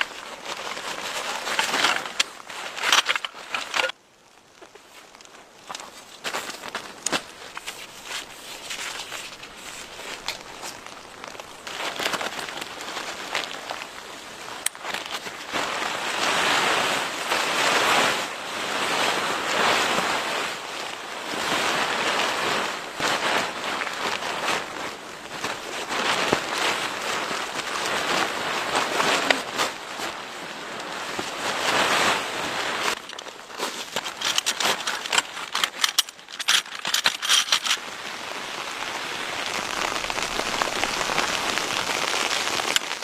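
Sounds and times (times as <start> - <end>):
strong blizzard wind gusting: 37.8 - 42.8.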